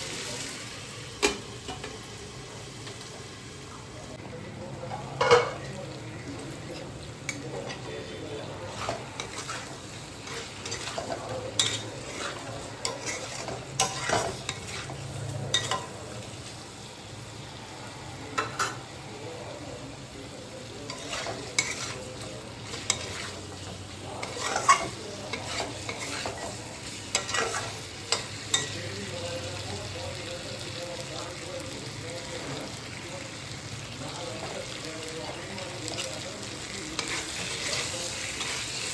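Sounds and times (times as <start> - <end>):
chicken sizzling in a pan: 0.0 - 4.2, 4.8 - 38.9
spatula scraping a pan: 8.7 - 15.9, 20.9 - 28.7.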